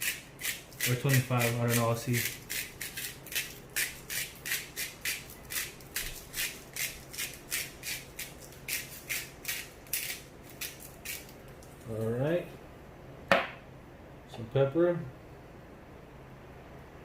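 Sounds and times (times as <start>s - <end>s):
pepper shaker rattling: 0.0s - 11.9s.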